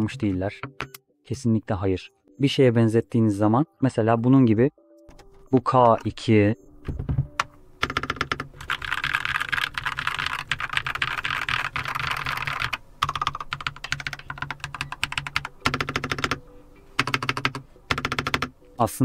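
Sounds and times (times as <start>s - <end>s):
mechanical keyboard typing: 6.9s - 16.4s, 17.0s - 18.5s.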